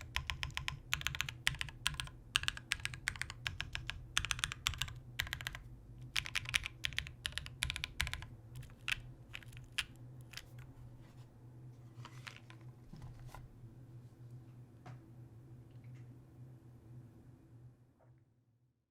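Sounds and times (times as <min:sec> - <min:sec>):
mechanical keyboard keystrokes: 0:00.0 - 0:10.7.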